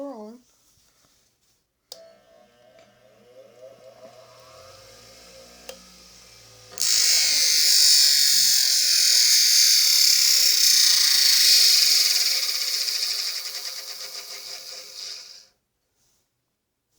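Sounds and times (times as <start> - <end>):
welder hissing: 5.7 - 15.5.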